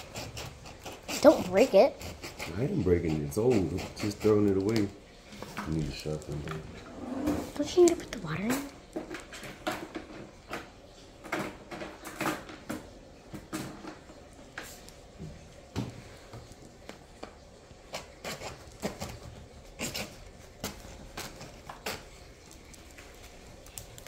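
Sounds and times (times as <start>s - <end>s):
knife cutting hard plastic: 0.0s - 4.9s, 17.8s - 22.9s.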